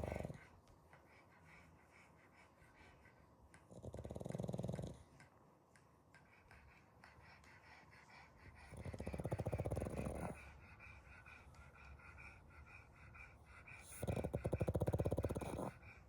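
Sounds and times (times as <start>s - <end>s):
dog snoring: 0.0s - 0.5s, 3.7s - 5.1s, 8.6s - 10.8s, 13.8s - 16.0s.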